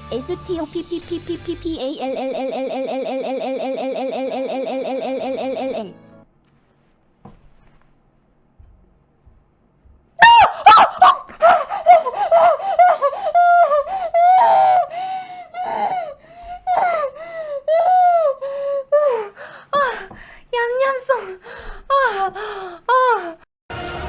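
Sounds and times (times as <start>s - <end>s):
woman shrieking laughter: 10.2s - 14.9s
woman screaming and squealing: 10.2s - 18.9s.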